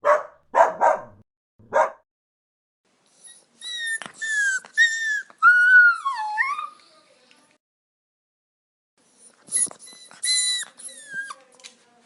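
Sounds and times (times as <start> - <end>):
puppy whining cries: 3.2 - 6.8, 9.2 - 11.4
puppy yipping: 3.2 - 6.8, 9.2 - 11.5.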